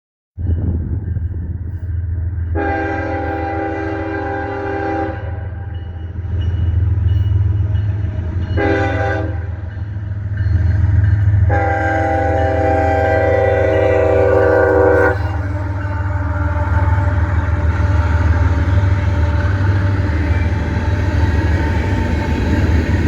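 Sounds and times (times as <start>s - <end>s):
diesel locomotive rumble: 0.4s - 23.0s
locomotive air horn: 2.6s - 5.6s, 8.6s - 9.6s, 11.4s - 19.9s.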